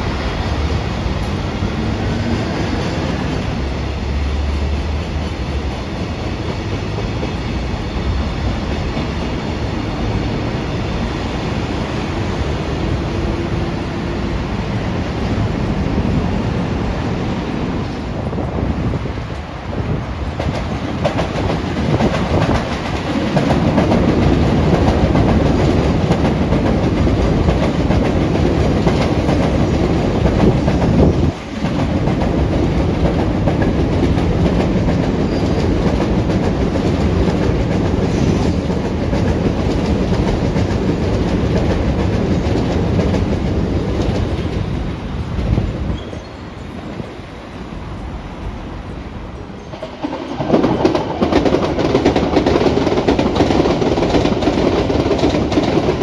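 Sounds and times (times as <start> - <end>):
train wheels clattering over rails: 0.0 - 56.0.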